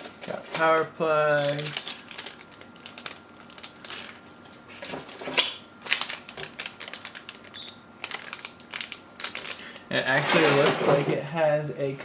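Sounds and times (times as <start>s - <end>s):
packaging rustling and clicking: 0.0s - 9.6s.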